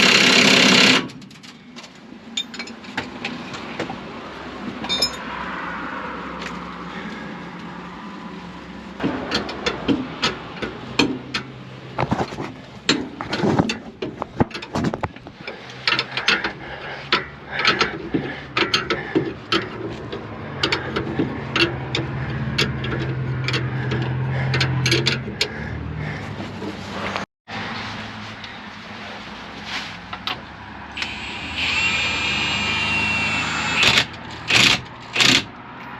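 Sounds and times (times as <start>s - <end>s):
metallic clicks and knocks: 9.0s - 25.6s
ratchet ratcheting: 18.6s - 25.5s.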